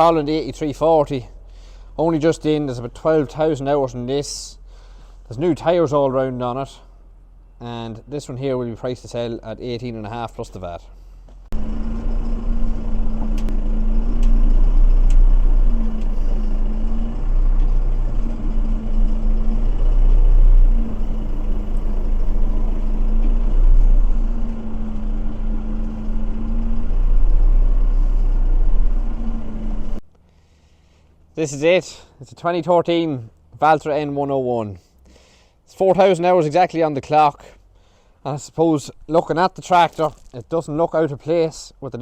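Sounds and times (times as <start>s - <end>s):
tractor diesel engine running: 11.5s - 30.0s
pitched hum: 11.5s - 30.1s.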